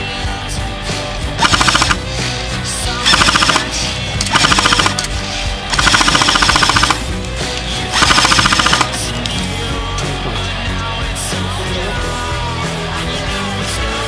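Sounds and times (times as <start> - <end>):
rock music: 0.0 - 14.0
airsoft gun full-auto bursts: 1.4 - 2.1, 3.0 - 5.1, 5.7 - 7.1, 8.0 - 9.0.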